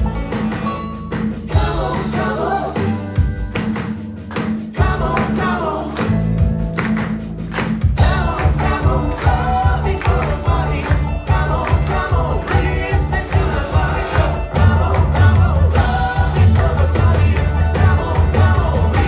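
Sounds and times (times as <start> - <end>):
live band playing: 0.0 - 19.0
lead voice singing: 1.5 - 3.4, 4.7 - 6.9, 8.0 - 19.0
steady bass beat: 1.5 - 19.0.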